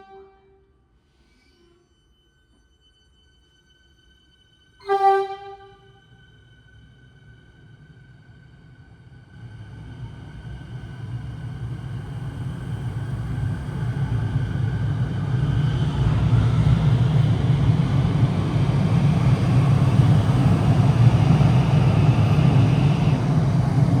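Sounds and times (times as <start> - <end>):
train rumble: 8.6 - 24.0.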